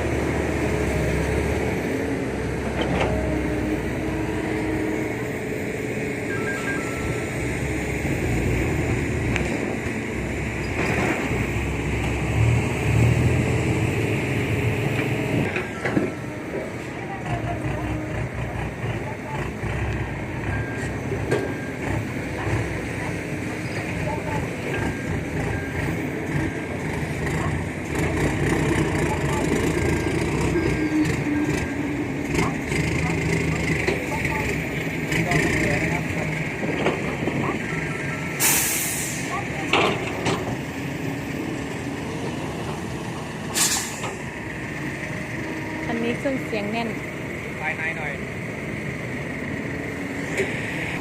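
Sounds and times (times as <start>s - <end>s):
heavy truck engine rumbling: 0.0s - 51.0s.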